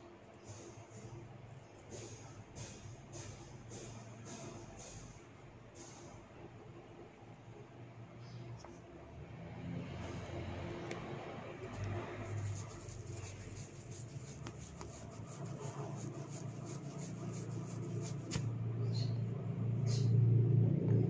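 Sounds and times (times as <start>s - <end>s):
hair crackling: 12.3s - 18.4s.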